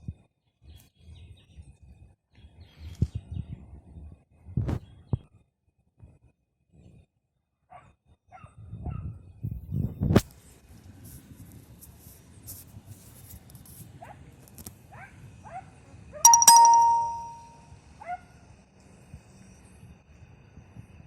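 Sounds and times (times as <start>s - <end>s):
bell-like metallic ring: 16.3s - 17.6s.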